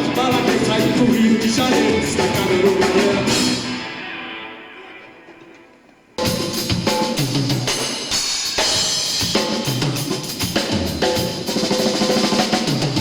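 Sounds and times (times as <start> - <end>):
live band playing: 0.0 - 13.0
drum kit hits: 6.2 - 13.0.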